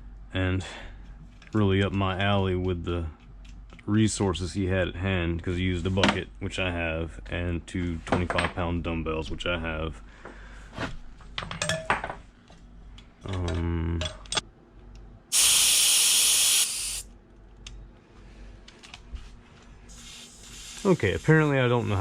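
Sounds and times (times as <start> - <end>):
air hissing from valve stem: 15.3 - 17.0, 19.9 - 22.0.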